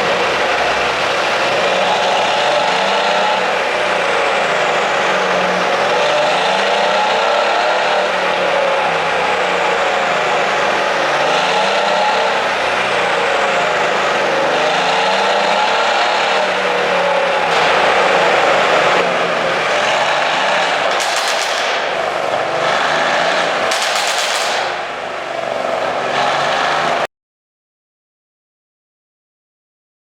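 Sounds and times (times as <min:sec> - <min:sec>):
car engine revving: 0:00.0 - 0:27.1.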